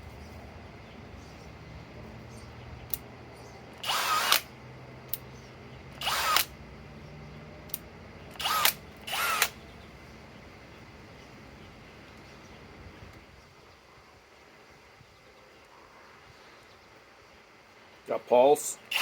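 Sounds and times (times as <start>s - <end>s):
sharp clicks: 2.9s - 3.1s, 3.7s - 4.5s, 5.1s - 5.3s, 5.9s - 6.6s, 7.7s - 9.6s
hammer drill motor whining: 3.7s - 4.5s, 5.9s - 6.6s, 7.7s - 9.6s.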